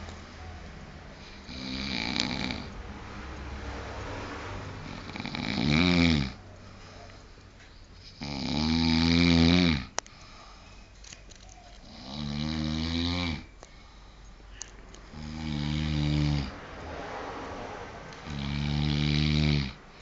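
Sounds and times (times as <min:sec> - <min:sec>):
quiet breathing: 0:00.0 - 0:03.6, 0:06.2 - 0:08.5, 0:09.7 - 0:16.7, 0:18.1 - 0:20.0
person snoring: 0:01.4 - 0:02.7, 0:04.8 - 0:06.4, 0:08.2 - 0:09.9, 0:11.9 - 0:13.5, 0:15.1 - 0:16.6, 0:18.2 - 0:19.9.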